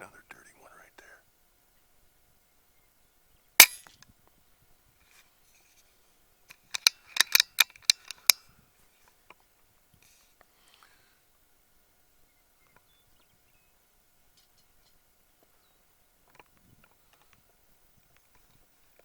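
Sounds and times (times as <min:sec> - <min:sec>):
air rifle shot: 0:03.6 - 0:03.8
short mechanical clicks: 0:06.8 - 0:08.4.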